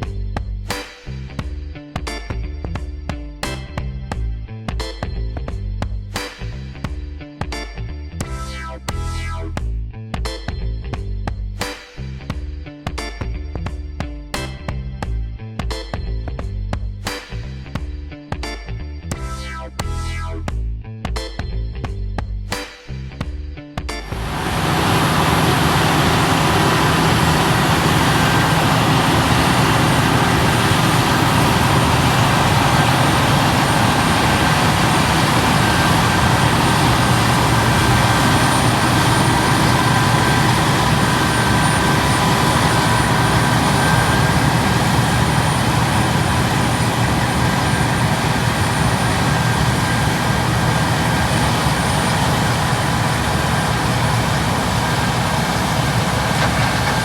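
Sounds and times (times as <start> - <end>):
diesel engine drone: 24.0 - 57.0
high-pitched machinery whine: 24.0 - 57.0.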